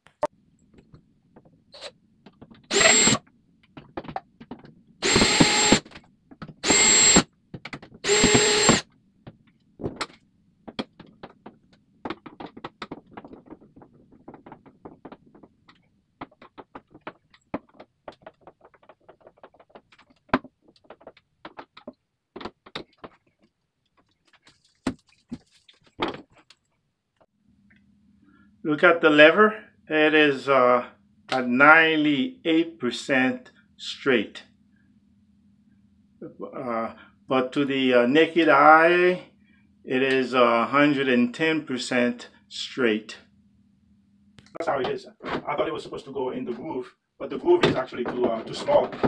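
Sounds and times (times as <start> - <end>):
power drill driving screws: 2.7 - 3.2, 5.0 - 5.9, 6.6 - 7.3, 8.0 - 8.9.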